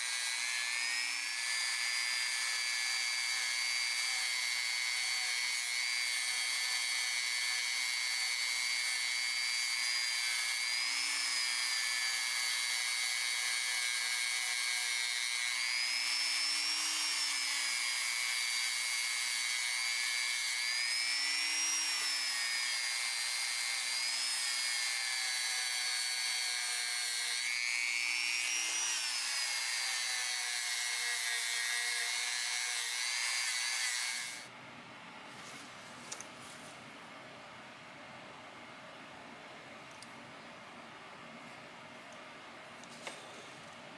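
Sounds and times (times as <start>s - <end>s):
power tool whining on metal: 0.0s - 34.5s.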